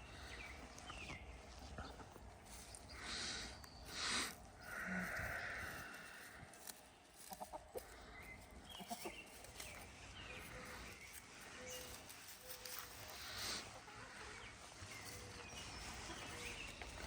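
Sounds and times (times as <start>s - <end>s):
chickens clucking: 0.1s - 17.0s.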